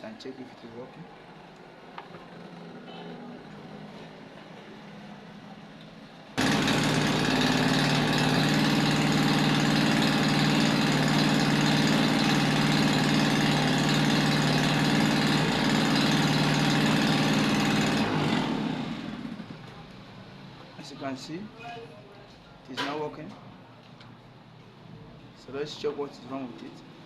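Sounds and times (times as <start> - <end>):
motor running: 6.4 - 19.7.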